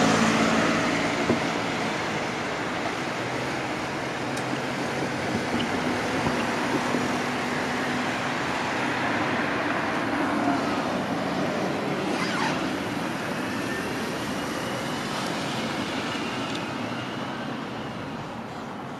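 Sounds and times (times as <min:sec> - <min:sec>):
train wheels rolling on rail: 0:00.0 - 0:08.7.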